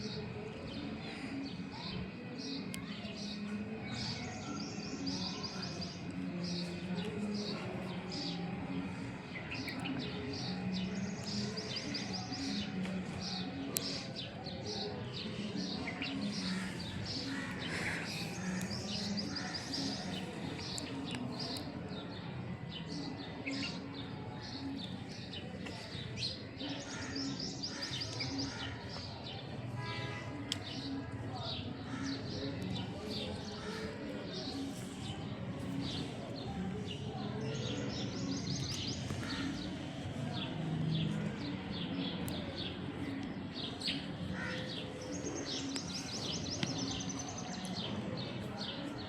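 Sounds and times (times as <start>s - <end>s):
small birds chirping: 9.3s - 23.8s, 31.4s - 49.0s.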